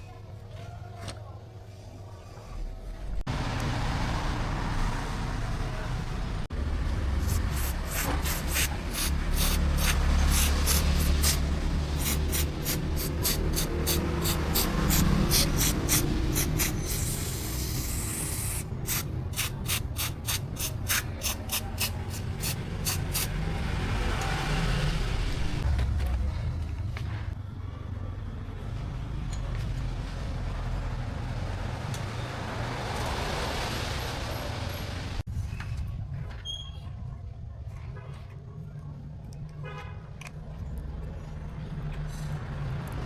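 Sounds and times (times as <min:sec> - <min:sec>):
steady low hum: 0:06.7 - 0:24.0
spray hissing in bursts: 0:07.2 - 0:23.3.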